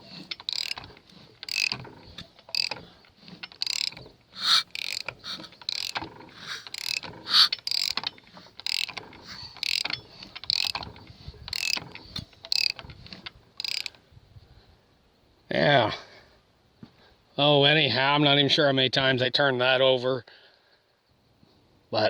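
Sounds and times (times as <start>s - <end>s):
cylinder compression puffs: 0.0s - 14.0s
engine mechanical clicking: 0.0s - 14.0s.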